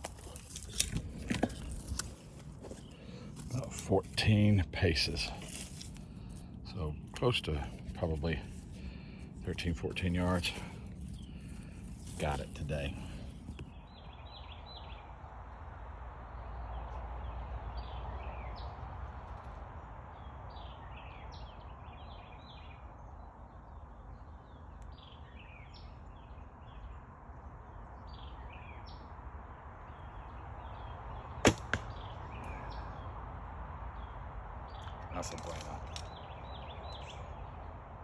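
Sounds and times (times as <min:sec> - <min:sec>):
arrow striking foam target: 0:31.4 - 0:32.1
bird chirps: 0:33.9 - 0:37.8.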